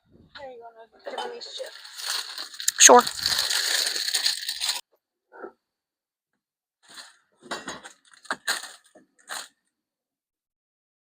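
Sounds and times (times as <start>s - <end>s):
objects clinking and rattling: 1.1s - 4.8s, 6.9s - 9.5s
snack bag crinkling: 1.6s - 4.8s, 8.0s - 9.5s.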